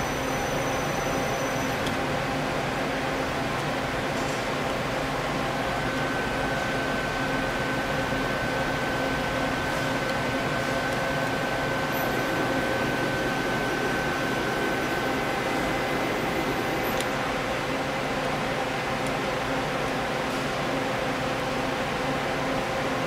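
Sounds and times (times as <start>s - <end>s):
lathe machine hum: 4.8s - 18.9s
high even whine: 10.7s - 17.2s.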